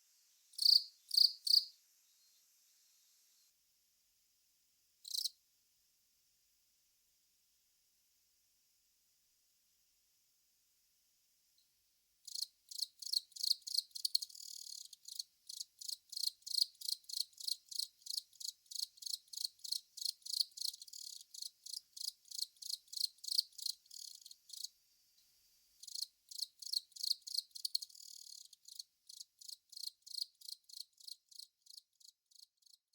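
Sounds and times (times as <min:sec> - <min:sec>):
cricket chirping: 0:00.5 - 0:02.5, 0:05.0 - 0:05.4, 0:12.2 - 0:24.8, 0:25.8 - 0:32.8.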